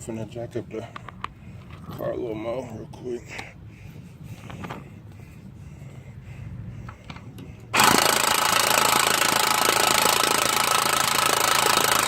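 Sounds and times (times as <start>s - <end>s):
power tool running: 7.8s - 12.0s.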